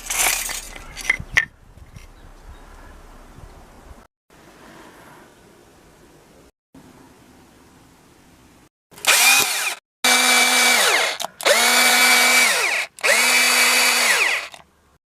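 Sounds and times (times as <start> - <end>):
electric drill whining: 9.0 - 14.6.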